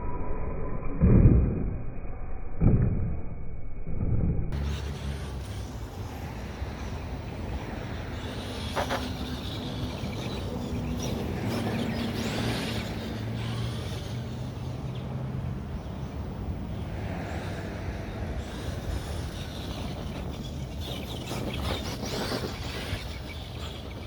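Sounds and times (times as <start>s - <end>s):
toy truck motor humming: 4.6s - 16.8s, 18.4s - 24.0s.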